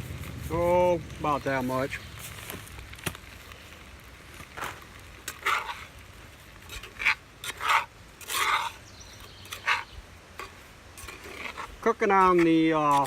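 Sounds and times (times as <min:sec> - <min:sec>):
utensil scraping in a pan: 0:03.2 - 0:13.0.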